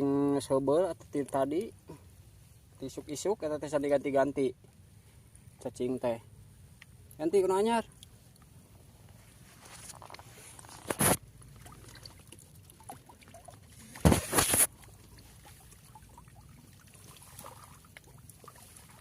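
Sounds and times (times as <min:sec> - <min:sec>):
water splashing: 0:11.3 - 0:19.0.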